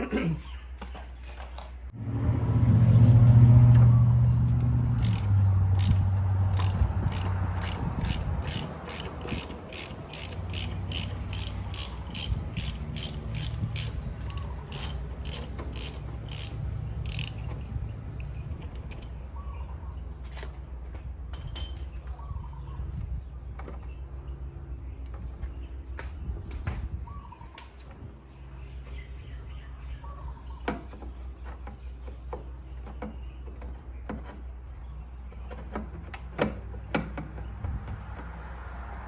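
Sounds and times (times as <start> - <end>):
low hum: 1.9 - 20.1
ratchet wrench clicking: 5.0 - 17.5.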